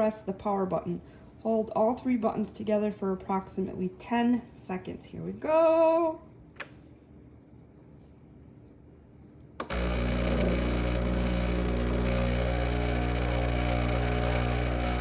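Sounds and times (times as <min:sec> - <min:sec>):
espresso machine pump humming: 0:09.6 - 0:15.0.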